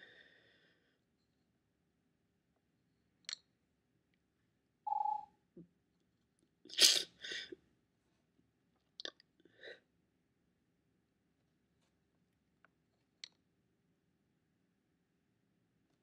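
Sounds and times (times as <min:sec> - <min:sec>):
person sniffing: 0:06.7 - 0:07.6.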